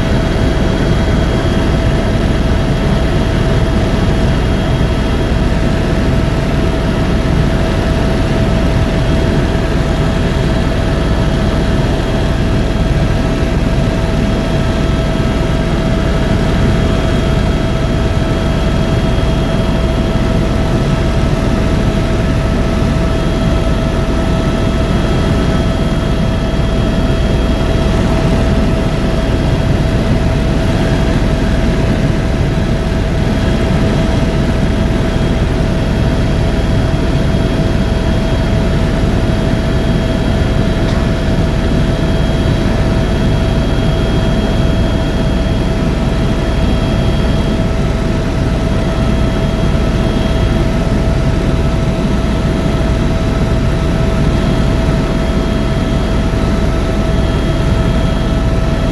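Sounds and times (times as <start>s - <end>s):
helicopter engine and rotor rumble: 0.0s - 58.9s.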